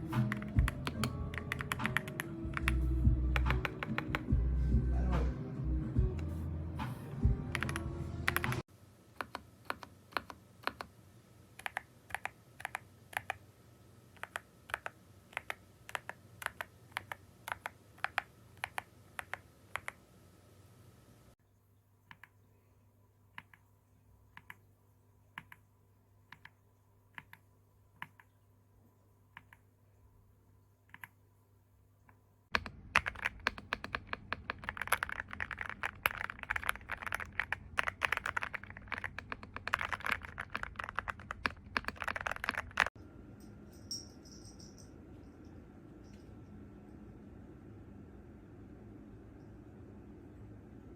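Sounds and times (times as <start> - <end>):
mechanical keyboard key clicks: 32.6 - 42.9.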